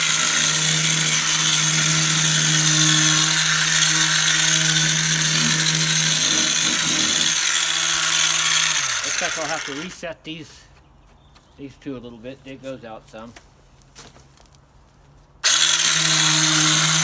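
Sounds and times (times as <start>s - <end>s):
power tool running: 0.0s - 10.0s, 15.4s - 17.0s.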